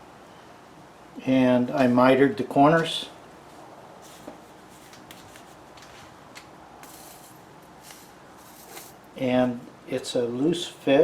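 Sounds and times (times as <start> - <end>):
clicks and rustles of small objects: 4.1 - 9.0.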